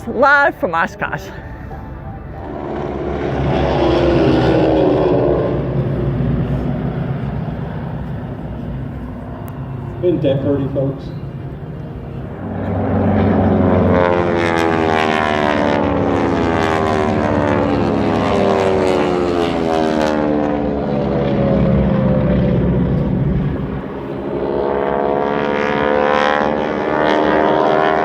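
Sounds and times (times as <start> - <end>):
propeller airplane flying past: 0.0 - 28.0.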